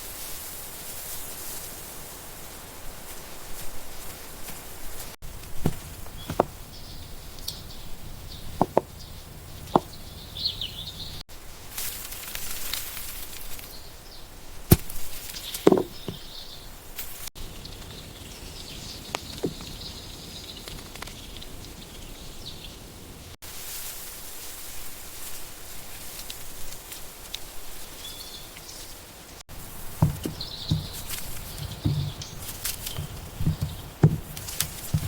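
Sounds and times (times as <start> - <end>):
birds chirping: 5.4 - 11.2, 15.3 - 16.8, 17.4 - 23.0, 29.5 - 35.0
sharp clicks and knocks: 29.9 - 35.0.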